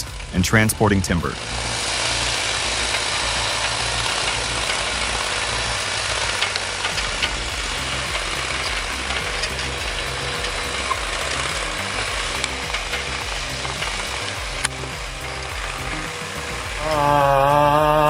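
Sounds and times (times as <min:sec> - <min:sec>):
broad hiss: 0:00.0 - 0:18.0
engine running: 0:00.0 - 0:18.0.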